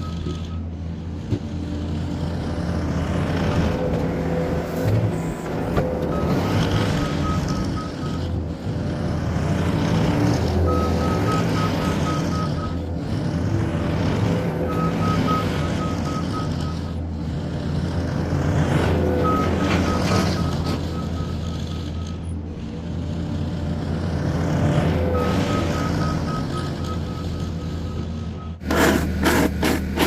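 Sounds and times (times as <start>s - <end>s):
reverse alarm beeping: 0.0s - 0.7s, 6.1s - 8.4s, 10.7s - 12.8s, 14.7s - 17.0s, 19.2s - 22.4s, 25.2s - 28.6s
diesel engine running: 0.0s - 30.0s.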